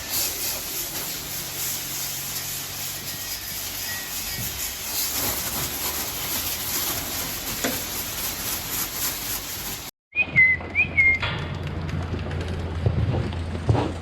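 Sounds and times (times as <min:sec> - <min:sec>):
short whistle: 0:10.1 - 0:11.2.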